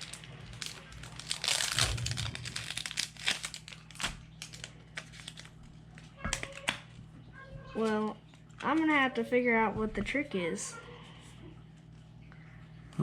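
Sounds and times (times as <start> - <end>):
plastic crinkling: 0.0 - 7.0.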